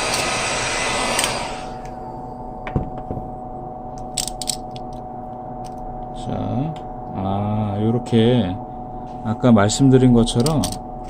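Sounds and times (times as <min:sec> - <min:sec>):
hot-air gun blowing: 0:00.0 - 0:02.0
faint steady hum: 0:00.0 - 0:11.0.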